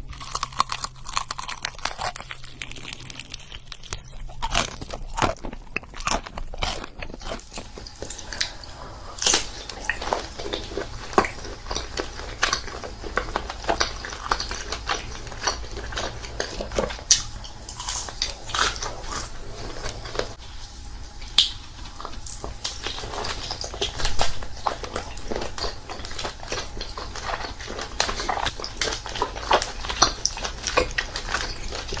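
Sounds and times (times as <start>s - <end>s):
biting and chewing: 0.0s - 32.0s
food crackling in mouth: 0.0s - 32.0s.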